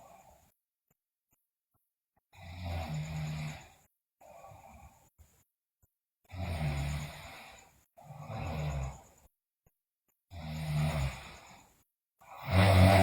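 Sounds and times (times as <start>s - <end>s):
girl snoring loudly: 2.4s - 3.8s, 6.3s - 9.1s, 10.3s - 13.0s.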